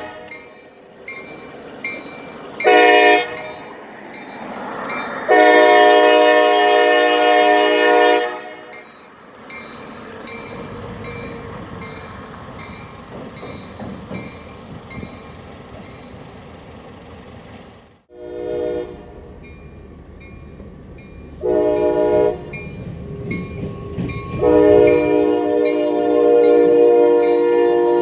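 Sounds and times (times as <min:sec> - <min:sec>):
locomotive air horn blasts: 0:00.0 - 0:00.8, 0:02.6 - 0:03.7, 0:05.3 - 0:08.8, 0:18.1 - 0:19.3, 0:21.4 - 0:22.6, 0:24.3 - 0:28.0
crossing bell dinging: 0:00.0 - 0:17.8, 0:19.2 - 0:27.7
train rumbling and clacking past: 0:00.0 - 0:28.0.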